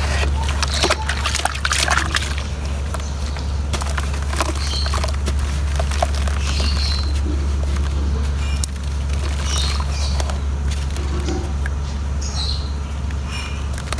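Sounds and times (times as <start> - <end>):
cement crumbling in water: 0.0 - 2.9.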